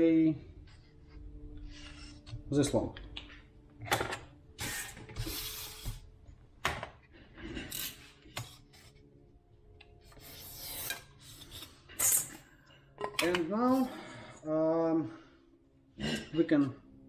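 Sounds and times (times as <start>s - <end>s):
craft knife cutting foam: 4.6s - 6.1s.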